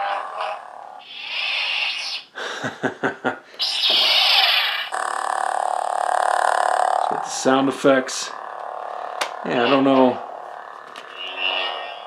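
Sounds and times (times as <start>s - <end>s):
toy lightsaber buzzing hum: 0.0s - 2.3s, 3.6s - 12.0s
toy lightsaber hissing crackle: 1.0s - 2.3s, 3.6s - 5.0s, 11.0s - 12.0s
toy lightsaber sharp hits: 3.6s - 5.2s.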